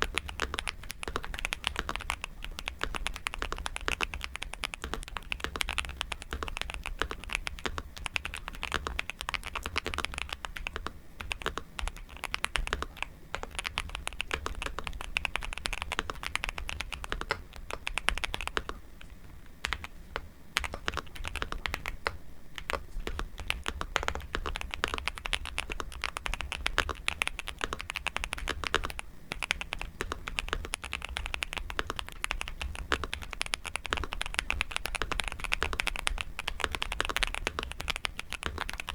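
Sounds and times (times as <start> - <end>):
mechanical keyboard typing: 0.0 - 38.9
steady low hum: 0.0 - 38.9.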